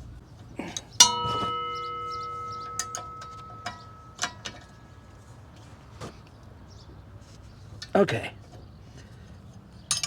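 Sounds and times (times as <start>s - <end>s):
wrench ringing metallic tone: 0.7s - 5.6s
light metal clicks and taps: 0.7s - 6.1s
wrench knocking against metal: 0.8s - 5.2s.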